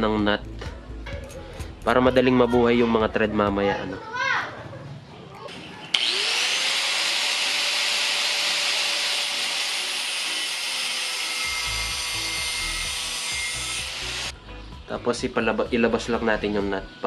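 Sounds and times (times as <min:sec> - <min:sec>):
metal grinding: 0:05.5 - 0:14.3
power tool motor whine: 0:05.9 - 0:14.3.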